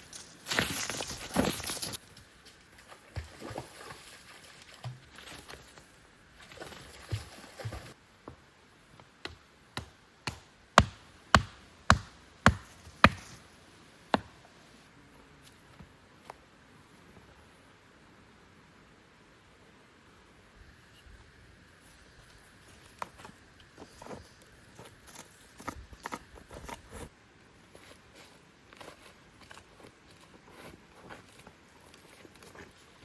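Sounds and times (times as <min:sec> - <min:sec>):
footsteps in leaves: 0:00.0 - 0:08.0
wood chopping strikes: 0:09.2 - 0:13.4, 0:14.1 - 0:14.4.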